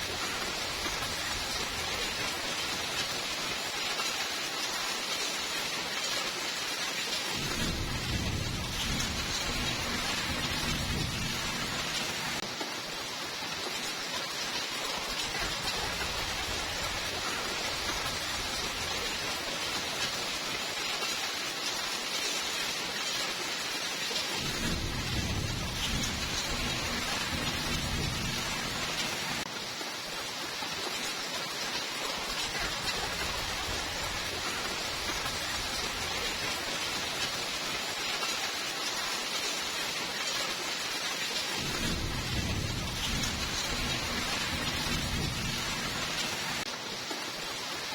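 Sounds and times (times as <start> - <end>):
steady rainfall hissing: 0.0 - 47.9
low rumble of thunder: 7.3 - 12.4, 24.4 - 29.4, 41.6 - 46.7.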